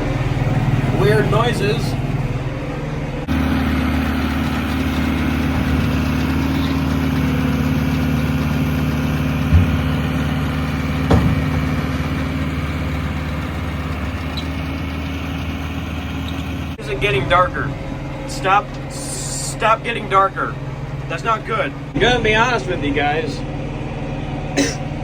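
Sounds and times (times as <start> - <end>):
tractor diesel engine running: 0.0 - 25.0
short knocks: 9.3 - 12.5.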